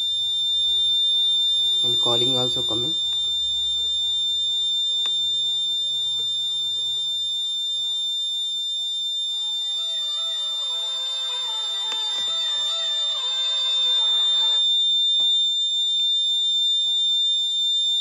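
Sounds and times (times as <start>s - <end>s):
high-pitched alarm buzzer: 0.0s - 16.0s
quiet electronic tune: 9.3s - 14.7s.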